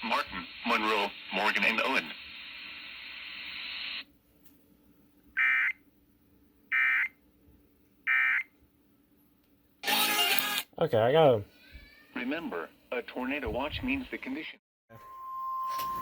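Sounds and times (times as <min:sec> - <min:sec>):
static hiss: 0:00.0 - 0:04.1.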